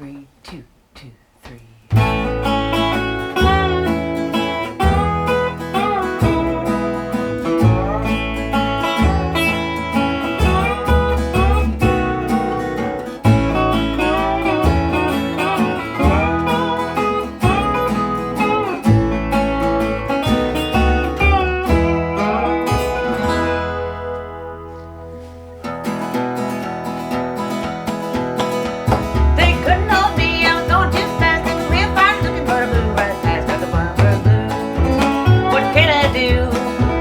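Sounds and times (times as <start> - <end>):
bass line and beat: 0.4 - 24.7, 27.1 - 37.0
acoustic guitar strumming: 1.4 - 37.0
slide guitar bending notes: 1.8 - 37.0.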